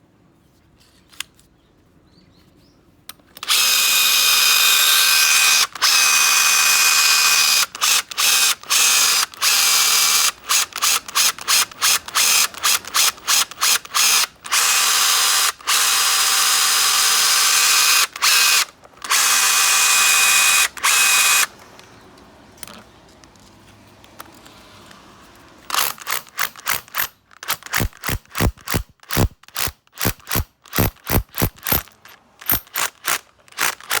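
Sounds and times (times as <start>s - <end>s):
hammer drill motor whine: 3.4s - 21.5s, 27.6s - 32.9s
short drill trigger blips: 25.7s - 34.0s.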